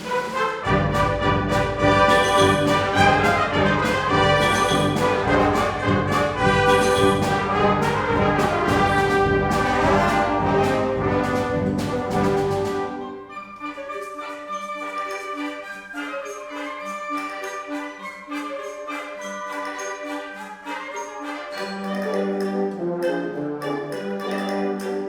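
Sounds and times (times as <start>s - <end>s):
percussion strikes: 0.0s - 13.1s, 19.5s - 25.0s
concert band brass chords: 0.0s - 13.3s.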